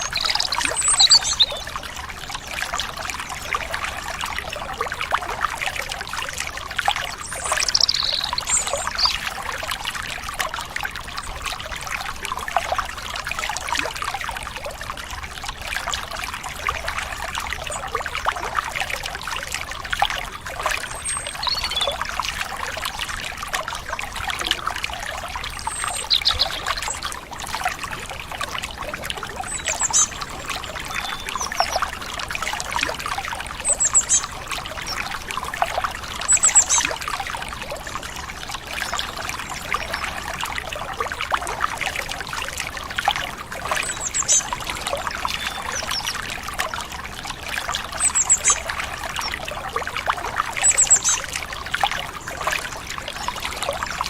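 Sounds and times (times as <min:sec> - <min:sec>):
high bird chirps: 0:00.0 - 0:01.6, 0:07.2 - 0:09.2, 0:21.3 - 0:21.9, 0:25.6 - 0:27.0, 0:29.5 - 0:31.8
stream water trickling: 0:00.0 - 0:54.0.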